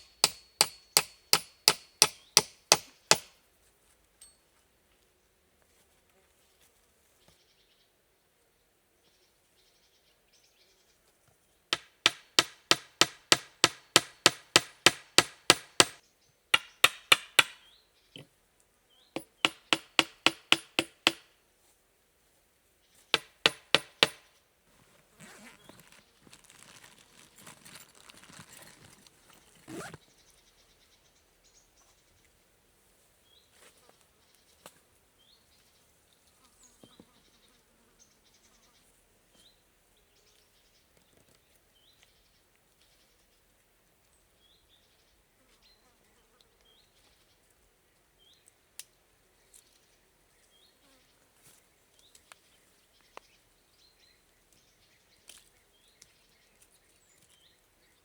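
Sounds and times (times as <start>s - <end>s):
sharp rapid knocks: 19.2s - 21.2s, 23.2s - 24.2s
soft rustling: 24.7s - 30.0s.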